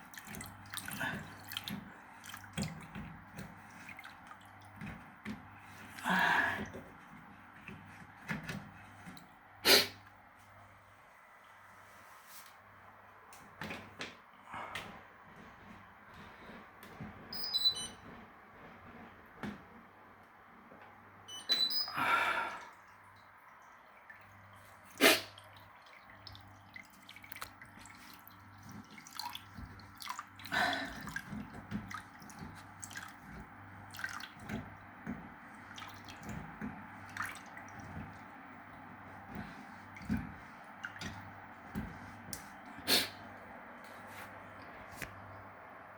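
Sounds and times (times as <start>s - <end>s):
water dripping and splashing: 0.0s - 9.6s, 22.5s - 45.4s
washing machine running: 0.0s - 11.0s, 13.0s - 45.9s.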